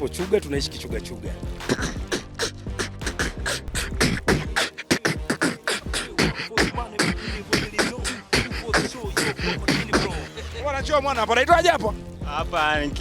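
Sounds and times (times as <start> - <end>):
person beatboxing: 1.6 - 10.5.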